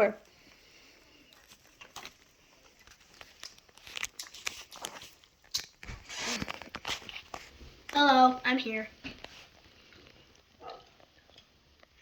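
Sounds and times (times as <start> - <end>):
plastic snack packaging crinkling: 1.2 - 8.0.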